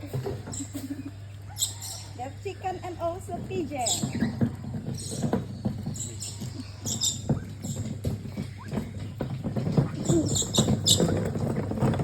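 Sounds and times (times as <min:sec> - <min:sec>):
birds pecking: 0:00.0 - 0:12.0
bird chirps and squeaks: 0:01.5 - 0:02.2, 0:03.7 - 0:09.0, 0:09.7 - 0:11.4.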